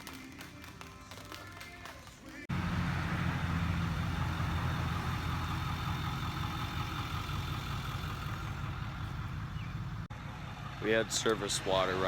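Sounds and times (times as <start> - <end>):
vehicle engine running: 2.5 - 12.0.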